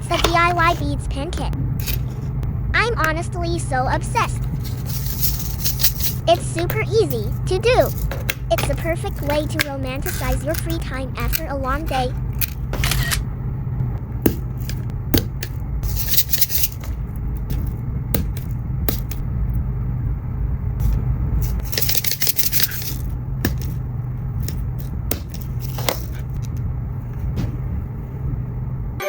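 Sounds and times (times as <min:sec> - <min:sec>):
steady low hum: 0:00.0 - 0:29.0
beads rattling scrapes: 0:01.8 - 0:02.3, 0:04.4 - 0:06.4, 0:07.1 - 0:12.6, 0:15.4 - 0:19.2, 0:20.8 - 0:23.8, 0:24.4 - 0:26.4.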